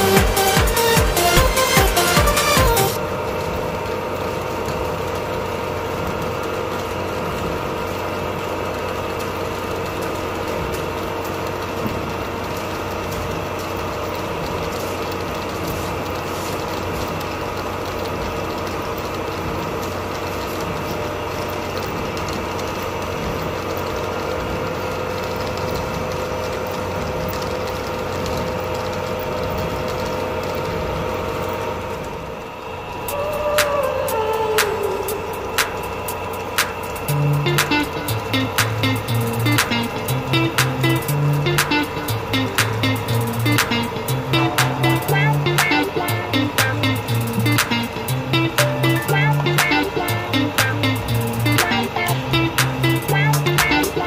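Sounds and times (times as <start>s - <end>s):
machine humming with steady tones: 0.0s - 54.0s.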